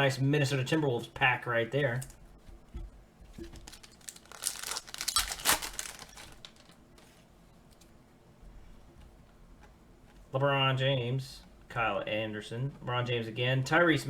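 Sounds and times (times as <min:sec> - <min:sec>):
wrapper tearing and crinkling: 0:03.6 - 0:06.8.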